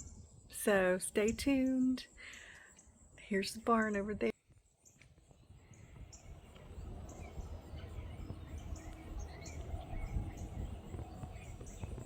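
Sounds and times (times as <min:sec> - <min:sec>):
small birds chirping: 0:00.0 - 0:12.0
steady low rumble: 0:05.3 - 0:12.0.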